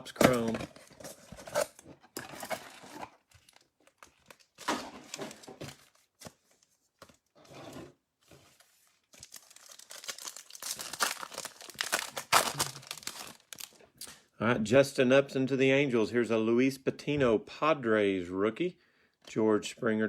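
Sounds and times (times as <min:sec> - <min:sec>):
card pack wrapper tearing and crinkling: 0:09.1 - 0:13.8.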